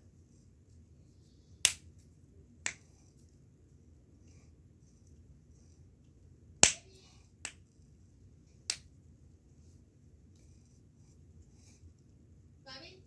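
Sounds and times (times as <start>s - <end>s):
fidget toy snapping: 1.6s - 1.9s, 6.6s - 7.6s.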